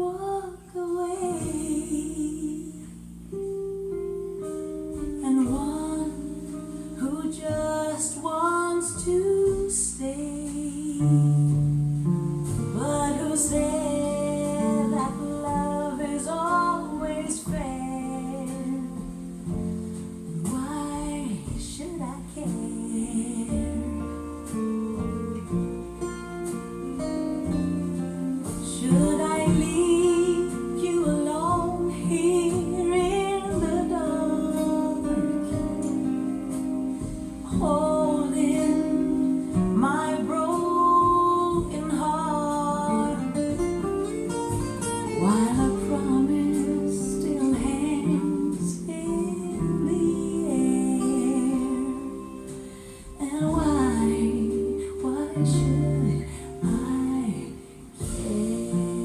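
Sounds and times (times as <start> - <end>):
acoustic guitar: 0.0 - 59.0
wavering vocal melody: 37.5 - 43.6, 45.2 - 59.0.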